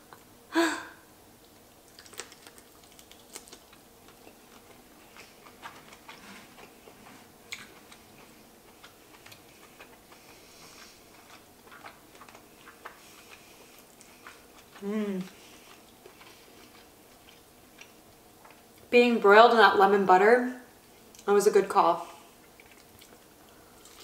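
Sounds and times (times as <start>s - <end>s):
lobster shell cracking: 1.9s - 3.8s.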